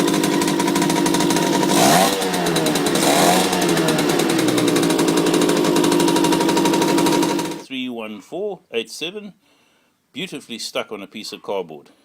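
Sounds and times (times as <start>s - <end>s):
two-stroke engine revving: 0.0s - 7.6s.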